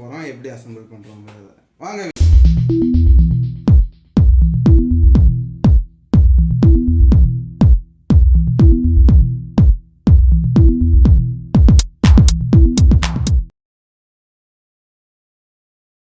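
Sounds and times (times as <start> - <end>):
electronic dance music: 2.2 - 13.5.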